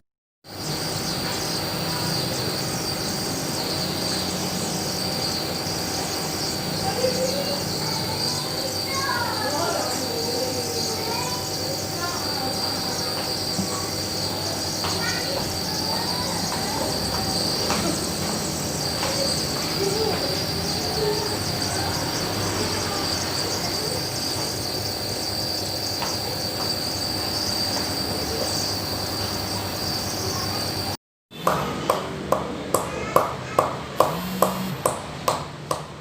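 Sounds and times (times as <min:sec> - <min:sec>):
child vocal sounds: 0:06.8 - 0:14.0, 0:14.8 - 0:18.1, 0:18.9 - 0:24.0
nebulizer compressor humming: 0:34.0 - 0:34.9.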